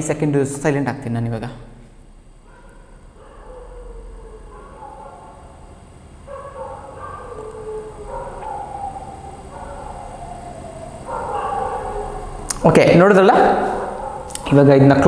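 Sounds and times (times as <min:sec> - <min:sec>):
dogs barking and yelping: 0:02.4 - 0:12.7, 0:13.4 - 0:14.5.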